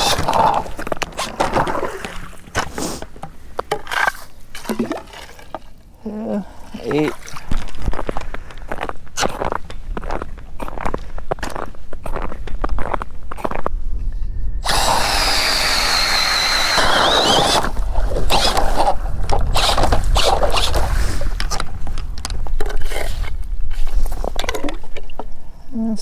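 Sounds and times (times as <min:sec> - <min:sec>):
ice auger motor whine: 0:00.0 - 0:01.9, 0:14.6 - 0:20.9
scraping and crunching ice: 0:00.0 - 0:05.8, 0:06.8 - 0:13.7, 0:14.6 - 0:25.3.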